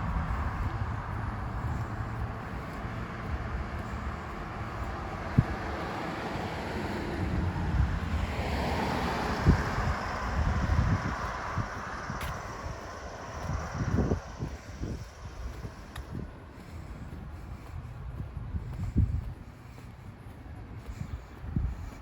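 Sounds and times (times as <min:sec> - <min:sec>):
traffic: 0:00.0 - 0:22.0
vehicle passing: 0:00.0 - 0:22.0
wind rumbling on microphone: 0:00.0 - 0:22.0.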